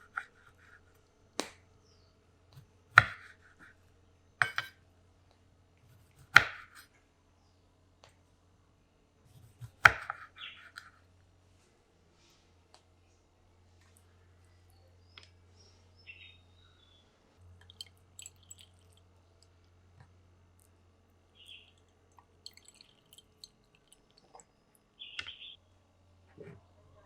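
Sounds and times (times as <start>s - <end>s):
kitchen utensils clicking and tapping: 4.4s - 4.7s, 17.6s - 18.9s, 22.5s - 24.0s.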